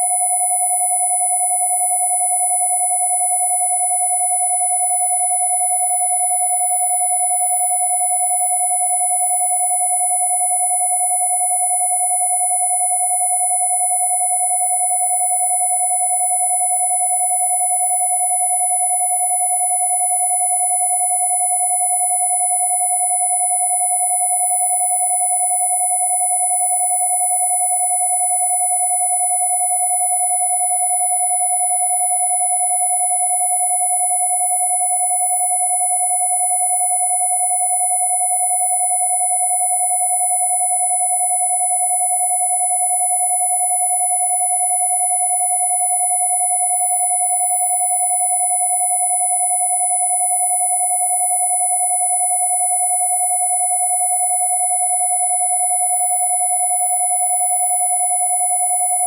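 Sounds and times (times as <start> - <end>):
high sine tone: 0.0 - 59.0
mid-pitched sine tone: 0.0 - 59.0.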